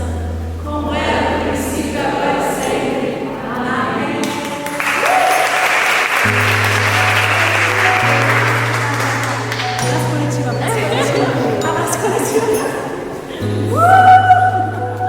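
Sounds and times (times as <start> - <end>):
choir singing: 0.0 - 15.0
keyboard accompaniment: 0.0 - 15.0
applause: 4.2 - 10.4.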